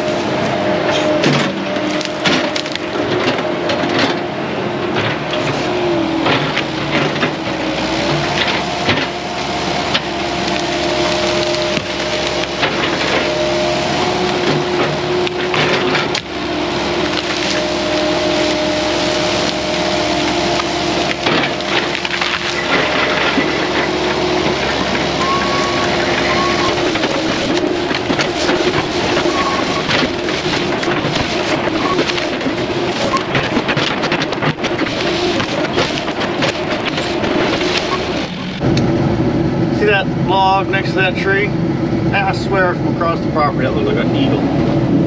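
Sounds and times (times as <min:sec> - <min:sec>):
hydraulic drone: 0:00.0 - 0:38.9
wood cracking and splintering: 0:26.6 - 0:38.7.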